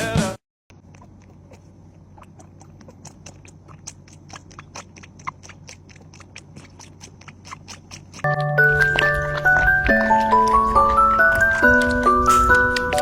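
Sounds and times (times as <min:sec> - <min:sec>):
music: 0:00.0 - 0:00.4, 0:08.3 - 0:13.0
cat chewing crunches: 0:00.7 - 0:13.0.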